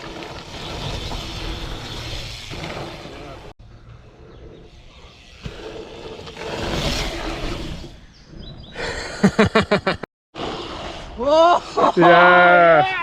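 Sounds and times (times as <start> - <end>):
person shouting: 11.2 - 13.0.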